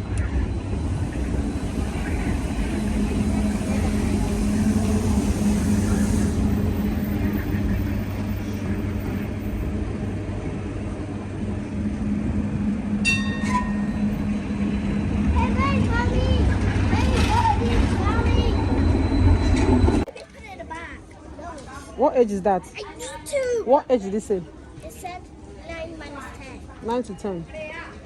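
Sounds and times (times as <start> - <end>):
moving vehicle rumble: 0.0 - 20.1.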